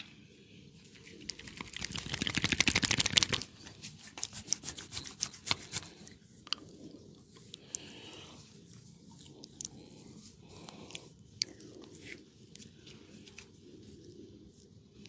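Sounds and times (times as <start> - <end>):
hands patting in massage: 1.4 - 5.9.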